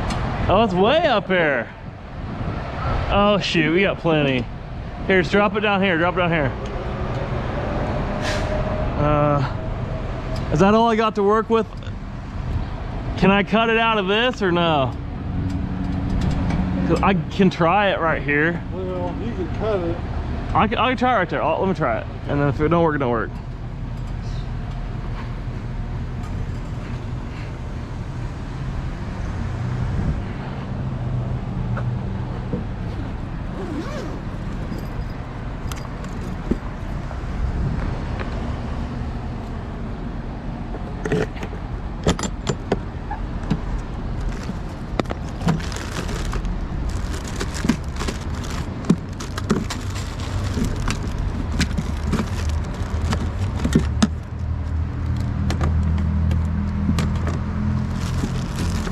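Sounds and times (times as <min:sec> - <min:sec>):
low rumble of traffic: 0:00.0 - 0:58.9
hand tools clicking and rattling: 0:44.2 - 0:54.2.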